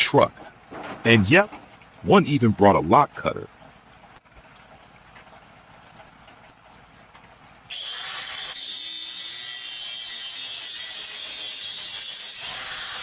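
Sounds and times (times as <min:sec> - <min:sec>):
power cutting tool grinding: 0:07.7 - 0:13.0.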